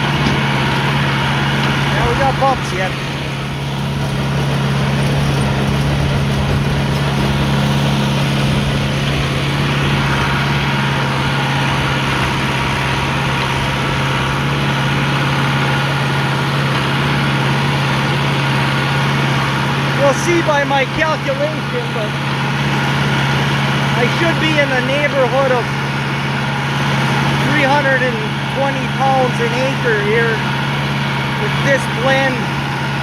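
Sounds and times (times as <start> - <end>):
machinery noise: 0.0 - 33.0
tractor engine running: 0.0 - 33.0.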